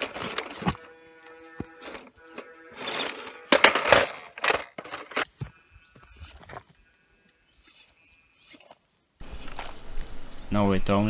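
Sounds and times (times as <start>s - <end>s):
toy car clattering over rocks: 0.0s - 6.8s.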